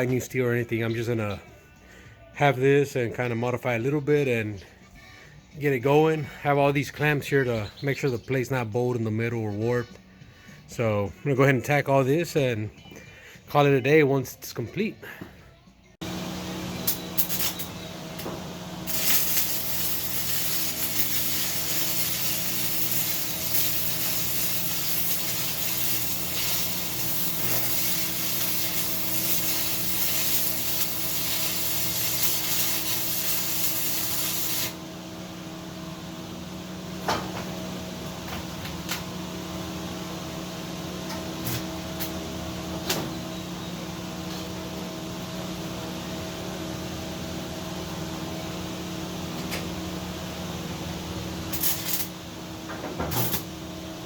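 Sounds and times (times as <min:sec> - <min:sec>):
arc welding crackling sizzle: 0:16.2 - 0:34.9, 0:51.2 - 0:52.3, 0:53.1 - 0:53.6.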